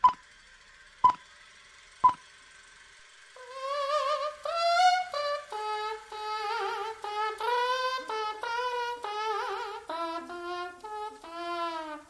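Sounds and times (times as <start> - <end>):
electronic metronome beeps: 0.0 - 0.2, 2.0 - 2.2
sopranos singing with vibrato: 3.4 - 12.0.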